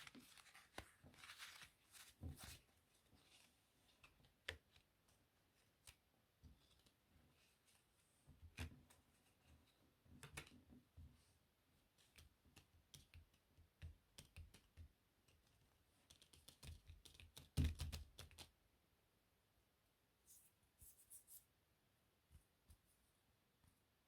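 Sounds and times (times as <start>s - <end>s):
playing cards clicking and tapping: 12.0s - 18.5s.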